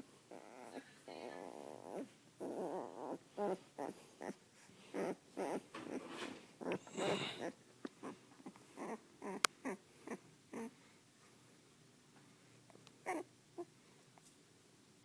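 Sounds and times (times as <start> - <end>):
puppy whimpering and grumbling: 0.3 - 10.8, 13.0 - 13.7.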